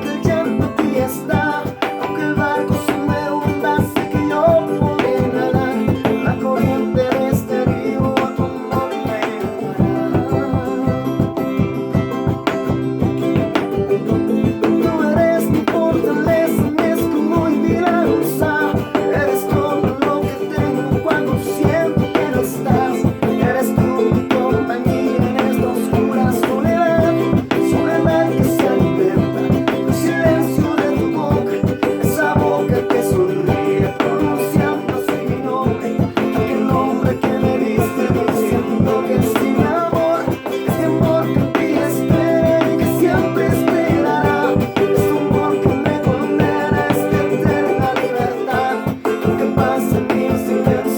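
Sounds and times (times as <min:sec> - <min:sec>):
acoustic guitar strumming: 0:00.0 - 0:50.9.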